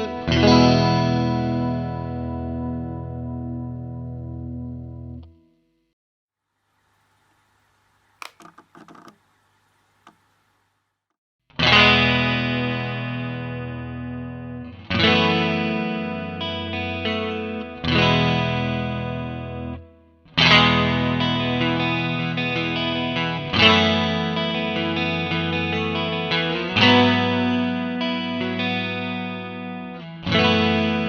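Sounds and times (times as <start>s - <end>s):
faint clicks: 6.8s - 10.8s
electric guitar chords ringing: 11.6s - 19.7s.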